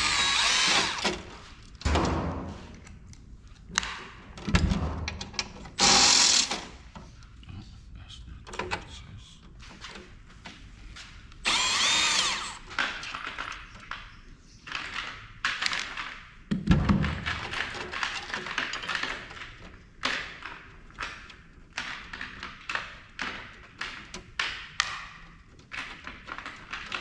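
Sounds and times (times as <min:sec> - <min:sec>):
tools clicking and clattering: 0:00.0 - 0:07.1, 0:17.1 - 0:27.0
heavy thump: 0:01.8 - 0:02.8.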